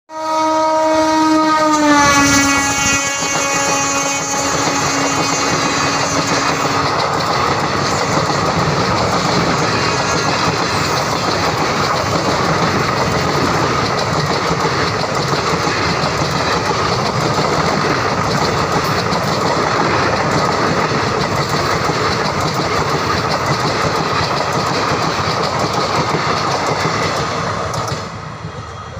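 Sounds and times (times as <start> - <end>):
locomotive horn: 0.1 - 7.0
train rumbling and clattering: 1.0 - 28.9.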